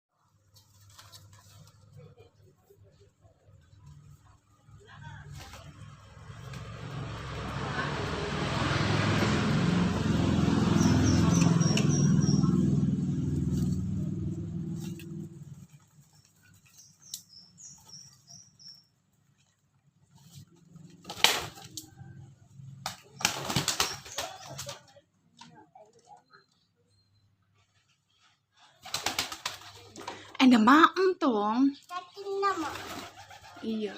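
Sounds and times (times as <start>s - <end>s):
vehicle engine passing: 3.8s - 18.8s, 19.4s - 24.8s
small bird chirping: 10.6s - 19.6s.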